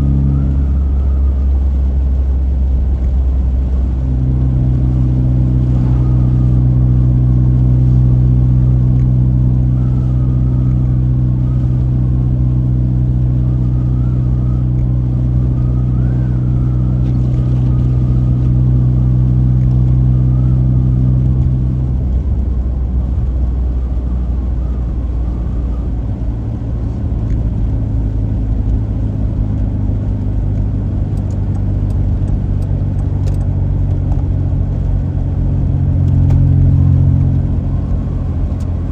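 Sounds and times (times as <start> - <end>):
car engine drone: 0.0 - 38.9
road rumble: 0.0 - 38.9.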